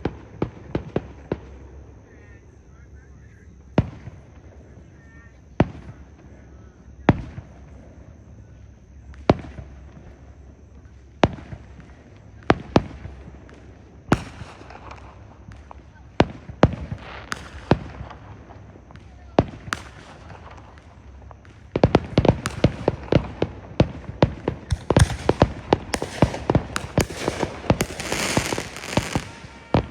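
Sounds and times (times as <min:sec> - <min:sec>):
fireworks crackling hiss: 0:03.1 - 0:29.9
fireworks shells booming: 0:11.2 - 0:29.9.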